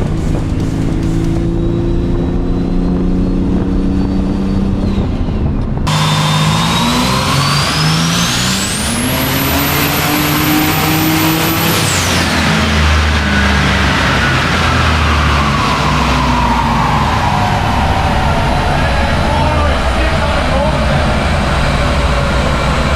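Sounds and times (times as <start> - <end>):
engine running hard: 0.0 - 22.9
high turbo whine: 0.0 - 22.9.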